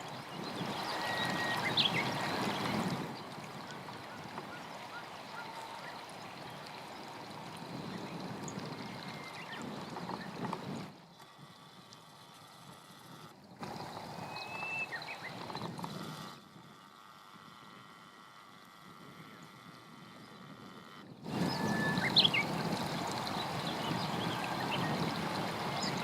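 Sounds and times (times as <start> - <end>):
stream water rushing: 0.0 - 11.0, 13.5 - 16.2, 21.3 - 26.0
bird whistle: 0.6 - 2.6, 14.2 - 15.4, 21.3 - 22.6.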